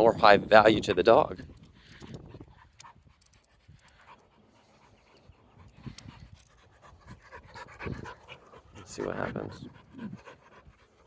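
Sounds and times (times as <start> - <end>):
dog panting: 0.2 - 11.0.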